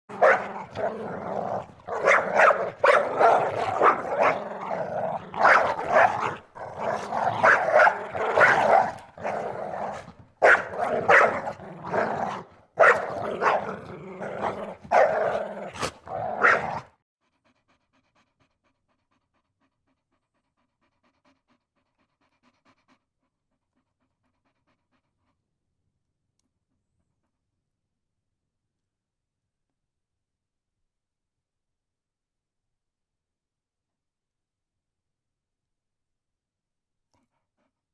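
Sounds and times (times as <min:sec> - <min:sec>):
dog barking and growling: 0:00.1 - 0:17.0.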